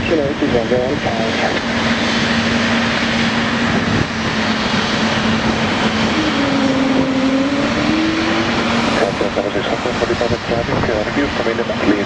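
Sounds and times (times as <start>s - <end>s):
jet engines roaring: 0.0s - 12.0s.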